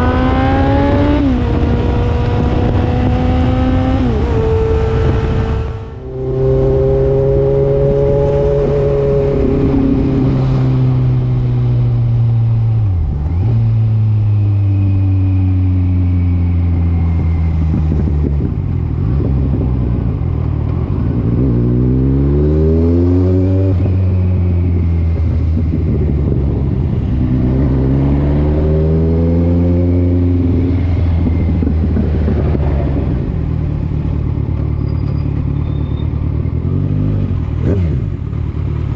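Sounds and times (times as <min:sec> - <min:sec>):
motorbike engine revving: 0:00.0 - 0:11.5.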